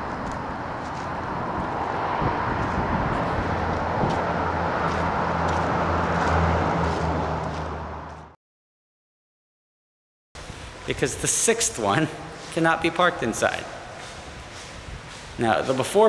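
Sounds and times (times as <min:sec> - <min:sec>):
low engine hum: 0:00.0 - 0:08.4
traffic noise: 0:00.0 - 0:08.4, 0:10.4 - 0:16.0.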